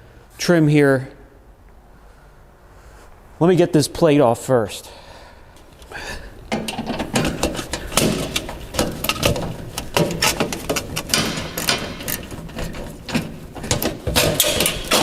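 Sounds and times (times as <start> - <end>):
metallic clicks and rattles: 5.6 - 15.0.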